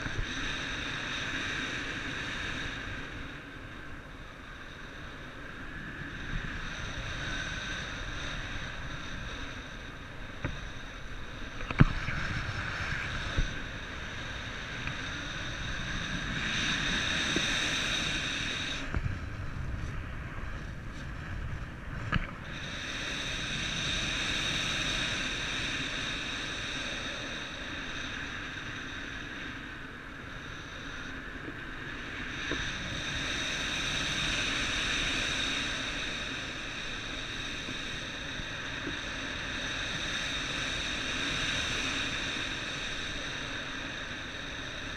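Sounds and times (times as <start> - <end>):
steady high whine: 0.0 - 44.9
wind rushing over microphone: 0.0 - 44.9.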